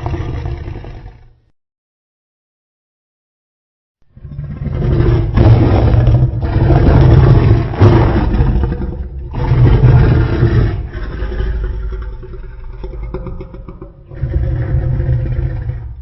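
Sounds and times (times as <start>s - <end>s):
deep monster roar: 0.0s - 1.4s, 4.1s - 16.0s.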